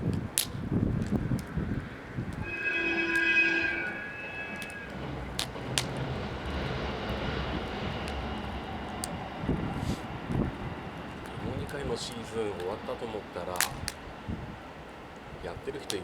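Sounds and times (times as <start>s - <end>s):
campfire wood popping: 0.0s - 2.4s, 8.0s - 16.0s
high whining tone: 2.3s - 7.8s.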